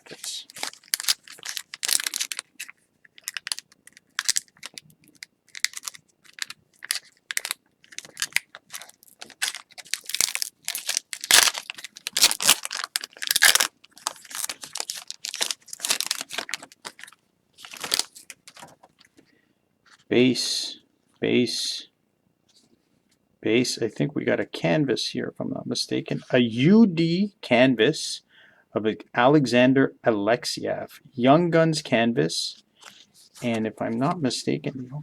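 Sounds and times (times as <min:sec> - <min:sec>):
wrapper crinkling and tearing: 0:00.0 - 0:19.0.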